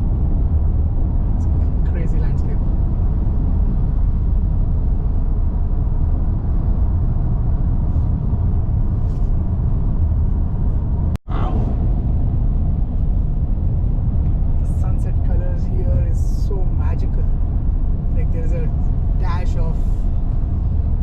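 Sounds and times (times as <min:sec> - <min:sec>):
car cabin road rumble: 0:00.0 - 0:21.0.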